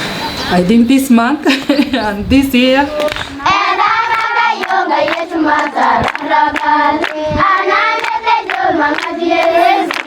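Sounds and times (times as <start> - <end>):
girls singing together: 2.8 - 10.0
hands clapping: 3.0 - 3.3, 4.0 - 10.0.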